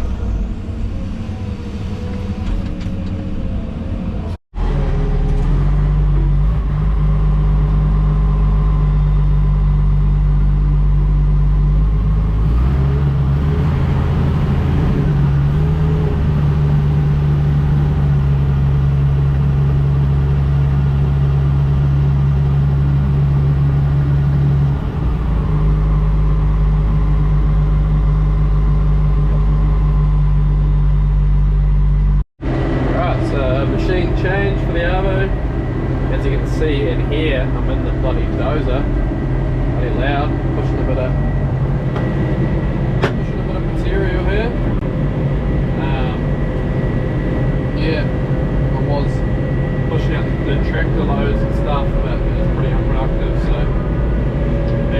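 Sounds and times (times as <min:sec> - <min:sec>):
heavy diesel engine under load: 0:00.0 - 0:54.9.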